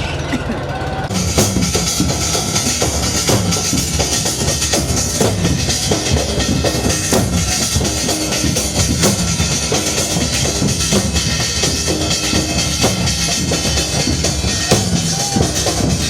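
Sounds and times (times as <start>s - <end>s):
drum-led dance music: 1.1s - 16.0s.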